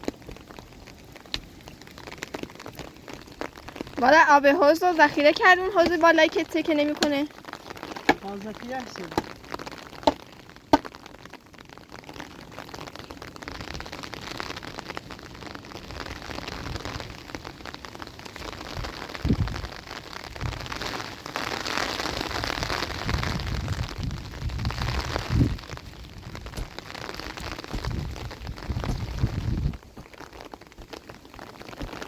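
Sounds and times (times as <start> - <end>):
steady rain falling: 0.0 - 32.0
dull thumps: 26.4 - 29.6.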